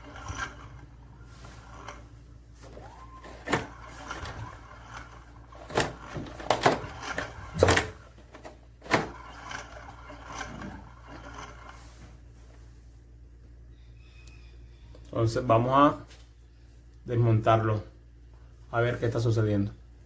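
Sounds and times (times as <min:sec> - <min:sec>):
knocks and clunks of tools: 0:05.6 - 0:09.2.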